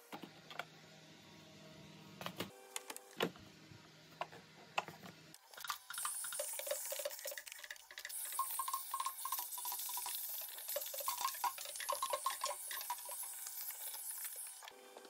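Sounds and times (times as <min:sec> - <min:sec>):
tap running water: 0:05.6 - 0:14.6.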